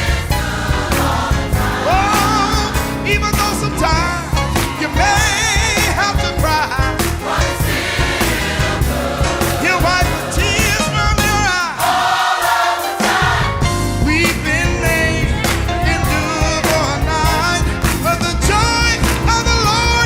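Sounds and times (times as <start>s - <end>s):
band beat: 0.0s - 20.0s
choir singing gospel: 0.0s - 20.0s.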